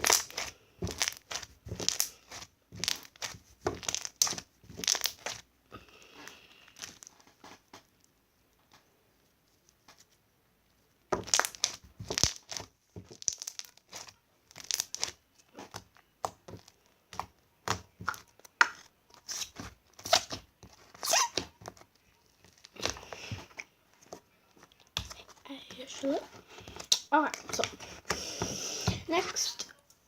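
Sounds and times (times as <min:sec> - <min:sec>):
slime squished by hand: 0:00.0 - 0:05.5, 0:11.1 - 0:23.7.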